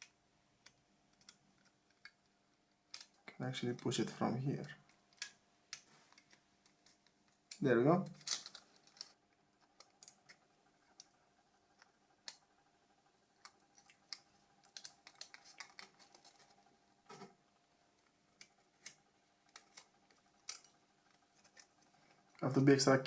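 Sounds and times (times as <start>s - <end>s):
plastic phone parts clicking: 0.0s - 3.2s, 4.6s - 11.1s, 13.4s - 17.2s, 18.0s - 22.4s.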